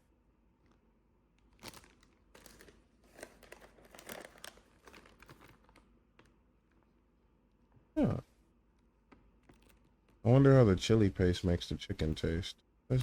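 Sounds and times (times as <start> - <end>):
plastic packaging crinkling: 1.4 - 6.9.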